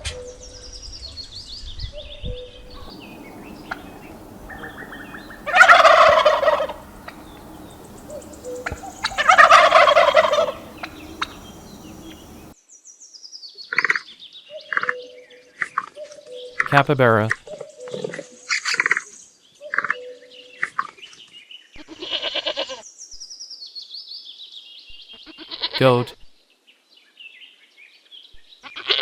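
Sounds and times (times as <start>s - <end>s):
faint high chirps: 2.7s - 12.5s
turkey gobbling: 2.7s - 12.5s.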